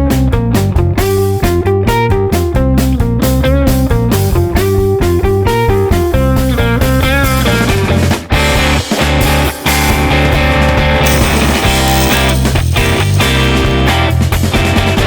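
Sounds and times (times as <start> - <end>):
bass and drums: 0.0 - 15.0
electric guitar: 0.0 - 15.0.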